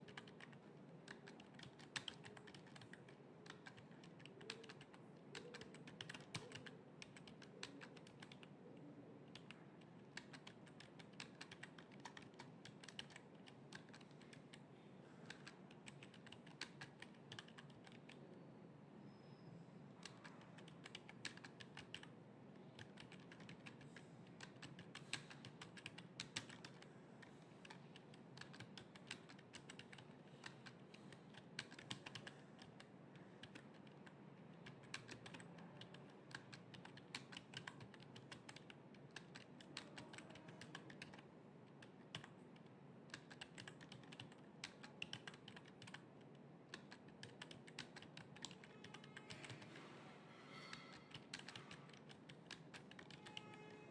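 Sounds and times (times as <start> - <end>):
fast typing on keyboard: 0.0 - 14.6, 15.2 - 18.3, 20.0 - 49.8, 50.8 - 53.7.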